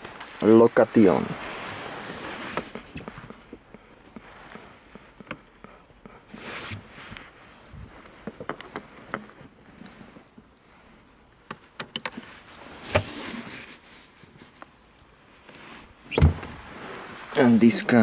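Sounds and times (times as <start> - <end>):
loud thump: 16.1 - 16.7.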